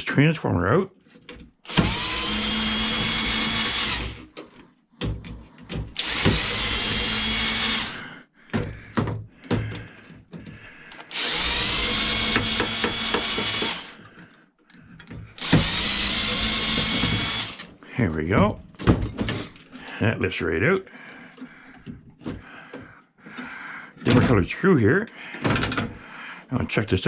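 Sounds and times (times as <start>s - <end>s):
power drill running: 1.6s - 4.3s, 6.0s - 8.1s, 11.1s - 14.0s, 15.4s - 17.7s.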